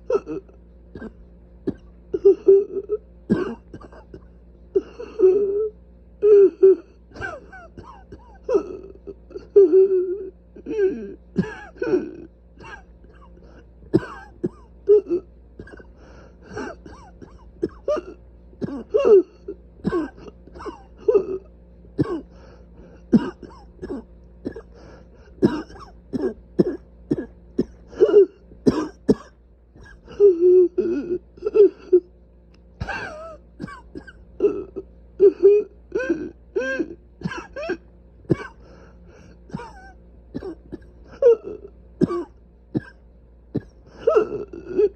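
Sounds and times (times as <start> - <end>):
person coughing: 0.0 - 5.5, 6.5 - 9.9, 10.6 - 32.1, 32.8 - 38.7, 39.5 - 43.0, 43.6 - 44.9
throat clearing: 0.1 - 2.5, 3.3 - 5.2, 7.1 - 9.6, 10.6 - 14.7, 16.5 - 24.8, 25.4 - 32.1, 32.8 - 34.8, 39.5 - 43.0.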